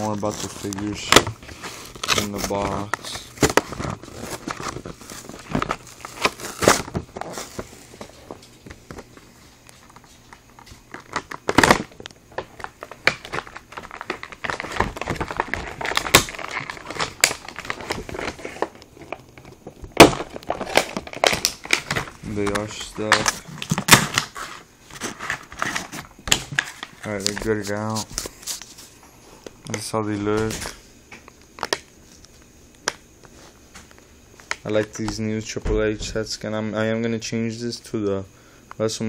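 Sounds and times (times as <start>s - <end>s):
packaging crinkling and tearing: 0.0s - 28.9s.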